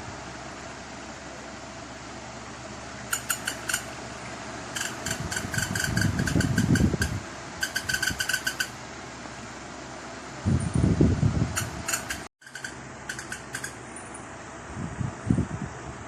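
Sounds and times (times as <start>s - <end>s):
electric fan whooshing: 0.0s - 16.0s
rapid ringing clicks: 3.1s - 3.9s, 11.6s - 14.2s.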